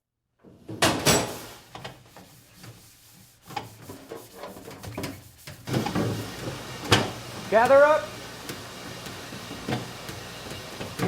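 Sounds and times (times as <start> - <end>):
kitchen knocks and clinks: 0.7 - 1.5.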